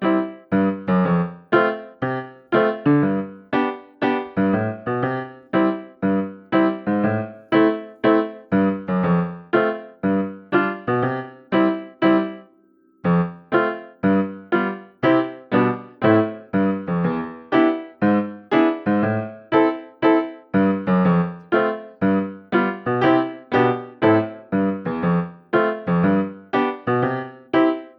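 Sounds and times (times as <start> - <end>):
bouncy piano tune: 0.0 - 27.9.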